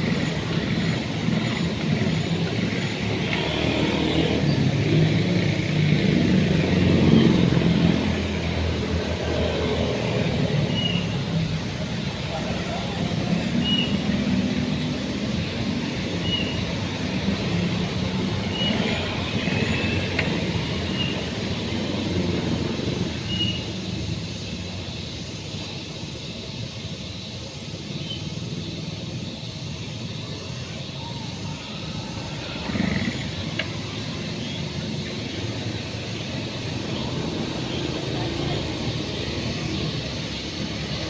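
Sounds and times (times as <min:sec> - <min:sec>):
engine running: 0:00.0 - 0:26.6.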